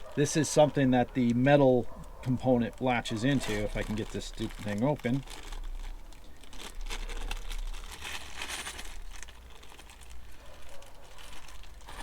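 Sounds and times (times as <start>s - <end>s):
plastic packaging crinkling: 0.4s - 12.0s.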